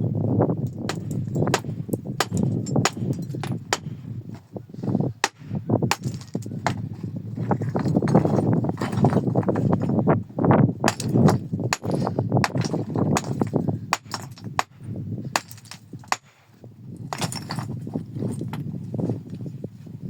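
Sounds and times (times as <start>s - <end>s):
stones clacking together: 0.7s - 4.4s, 5.2s - 10.0s, 10.9s - 16.4s, 17.0s - 18.7s
rocks scraping and shuffling: 0.7s - 20.0s.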